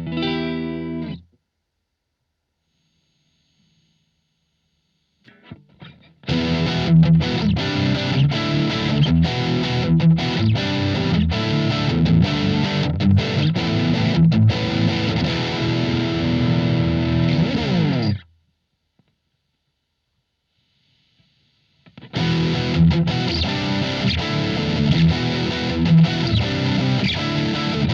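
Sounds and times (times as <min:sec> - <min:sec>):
distorted electric guitar: 0:00.0 - 0:01.3, 0:05.3 - 0:18.3, 0:20.8 - 0:27.9.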